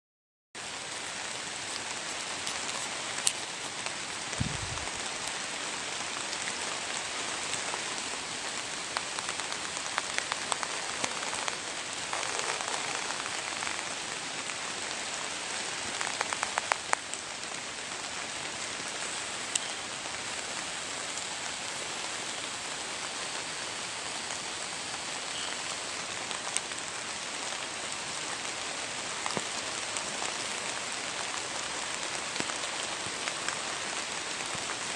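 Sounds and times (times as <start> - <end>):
steady rain falling: 0.6 - 34.9.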